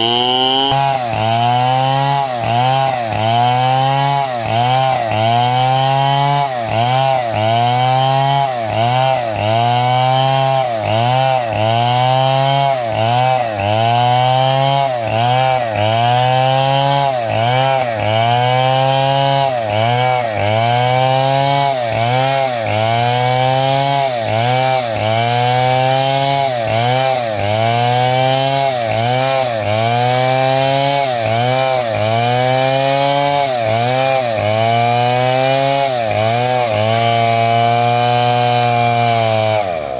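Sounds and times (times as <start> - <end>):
chainsaw cutting timber: 0.0 - 39.9.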